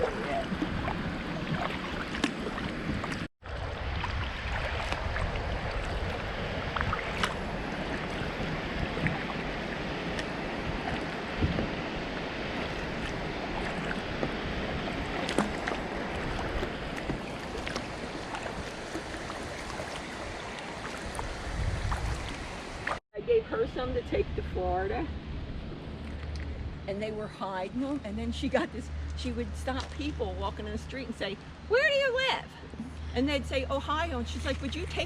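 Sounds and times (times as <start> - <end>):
small splashes and drips: 0.0 - 9.4, 15.1 - 23.0
wind on microphone: 0.0 - 27.2
river water running: 0.0 - 35.0.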